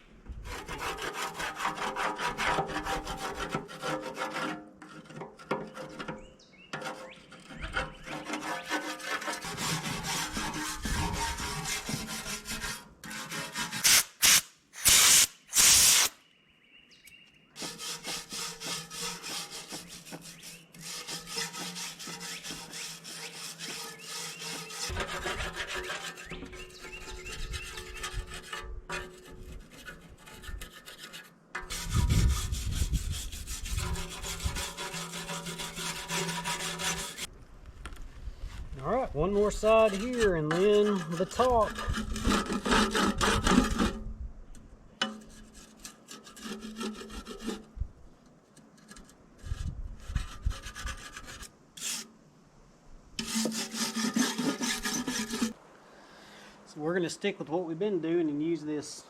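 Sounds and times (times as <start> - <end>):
hand scraping grime off metal: 0.4 - 16.1, 17.6 - 37.3, 38.8 - 44.1, 45.0 - 47.8, 48.5 - 52.1, 53.2 - 55.6.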